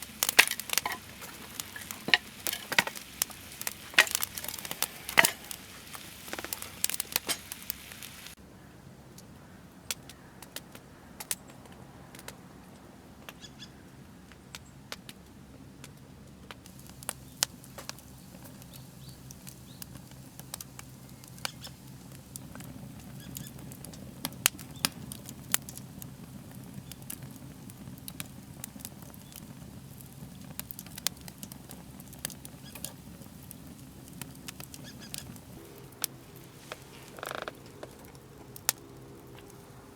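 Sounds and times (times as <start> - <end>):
dense sizzle: 0.0 - 8.4, 16.6 - 39.9
wood fire crackling and popping: 0.0 - 8.4, 14.3 - 39.9.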